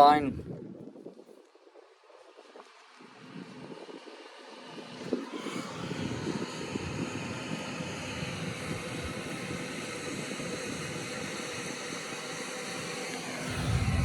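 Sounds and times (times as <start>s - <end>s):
combine harvester drone: 4.3s - 14.0s.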